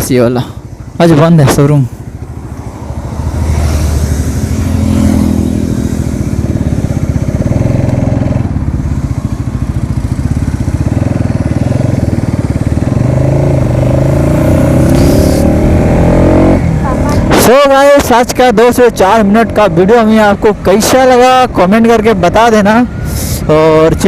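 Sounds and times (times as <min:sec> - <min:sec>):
motorcycle engine running: 0:00.0 - 0:24.0.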